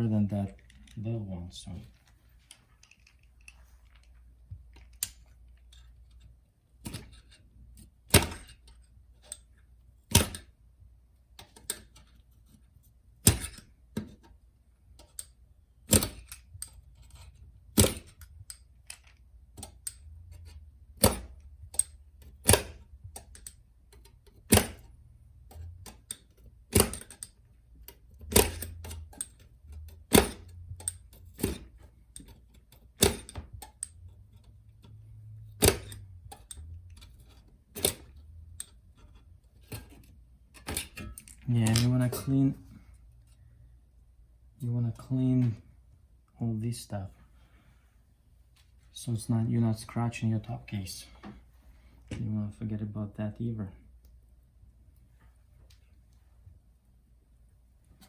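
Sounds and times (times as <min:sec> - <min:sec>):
faint ticks and scrapes: 0:00.5 - 0:06.4
sharp metallic clicks: 0:15.0 - 0:32.3.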